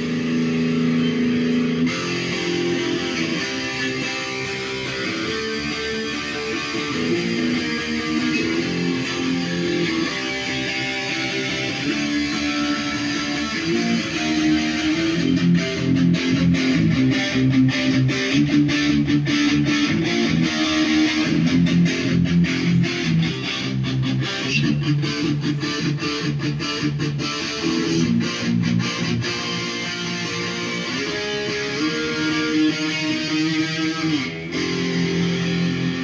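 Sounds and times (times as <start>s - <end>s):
electric guitar through amplifier: 0.0s - 36.0s.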